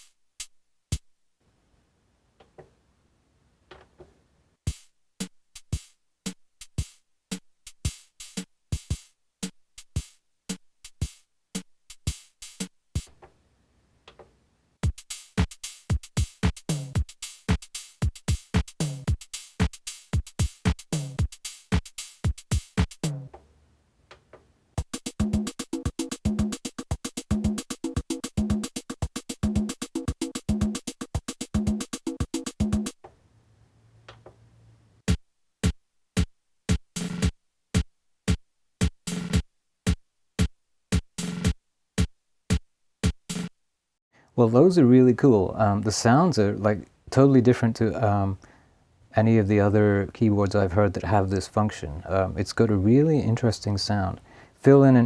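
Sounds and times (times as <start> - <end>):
electronic drum patterns: 4.7 - 13.2, 14.8 - 23.3, 24.8 - 33.0, 35.1 - 43.5.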